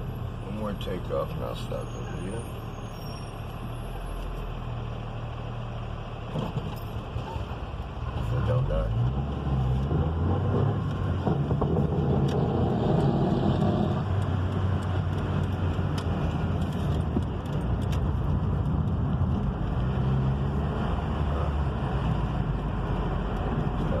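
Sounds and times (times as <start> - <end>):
vehicle engine accelerating: 8.1 - 24.0.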